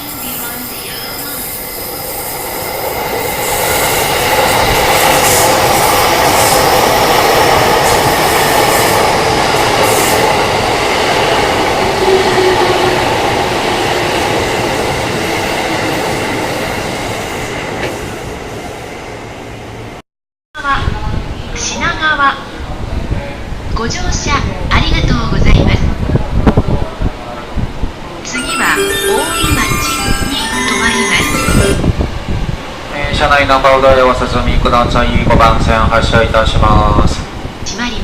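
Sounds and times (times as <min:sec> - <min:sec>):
train wheels rumbling on rails: 0:00.0 - 0:18.8.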